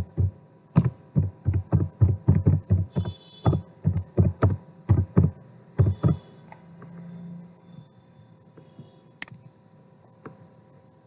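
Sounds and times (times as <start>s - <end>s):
computer keyboard typing: 0.0s - 6.2s.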